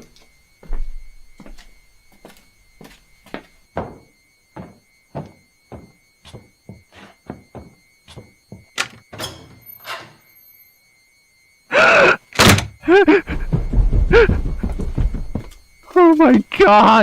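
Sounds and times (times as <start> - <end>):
dull thuds: 12.4 - 15.8.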